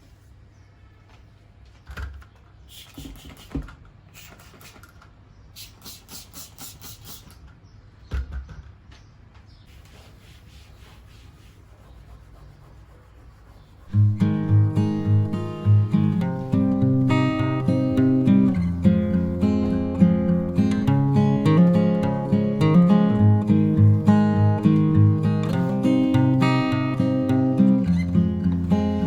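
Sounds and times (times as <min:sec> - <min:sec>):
scrubbing strokes: 0:09.7 - 0:14.2.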